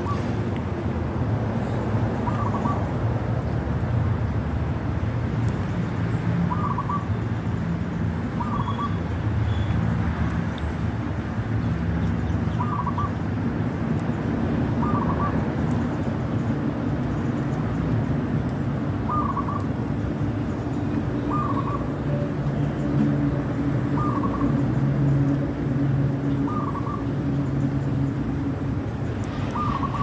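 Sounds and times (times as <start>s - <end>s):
bird warbled call: 6.5s - 7.1s, 8.4s - 9.0s, 12.6s - 13.2s, 14.8s - 15.4s, 19.1s - 19.7s, 21.2s - 22.3s, 24.0s - 24.6s, 26.4s - 27.1s, 29.3s - 30.0s.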